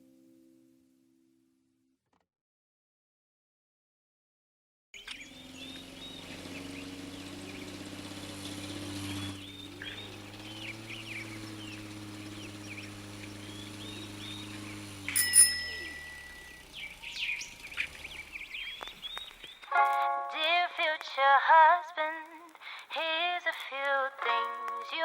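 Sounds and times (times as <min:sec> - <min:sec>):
small birds chirping: 0:05.0 - 0:21.0
loud ringing sound: 0:15.1 - 0:17.0.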